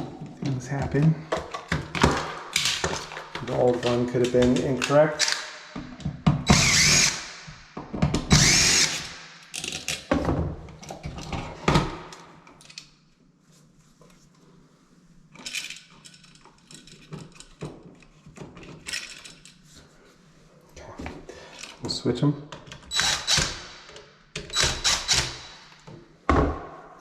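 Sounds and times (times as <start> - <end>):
cordless drill whining: 6.5 - 7.3, 8.3 - 9.2, 22.9 - 23.6, 24.4 - 25.5.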